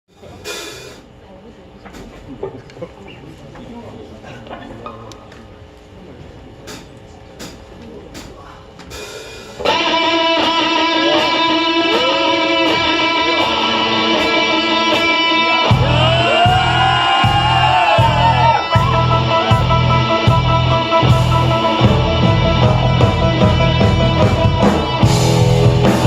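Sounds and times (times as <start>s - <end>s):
electric guitar chord ringing: 9.7s - 26.0s
bass and drums pulsing: 15.0s - 26.0s.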